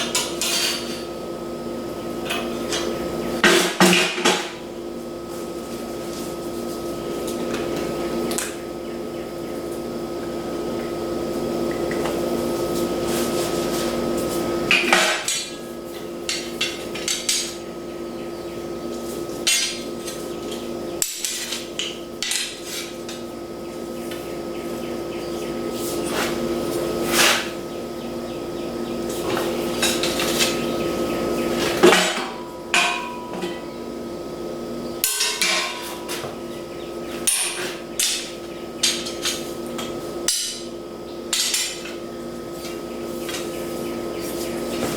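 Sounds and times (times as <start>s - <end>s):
metal tools clanking: 0.0s - 1.1s, 14.7s - 17.6s, 19.4s - 23.3s, 31.6s - 33.8s, 35.0s - 36.4s, 37.1s - 40.7s, 41.3s - 42.0s
steady hum: 0.0s - 44.9s.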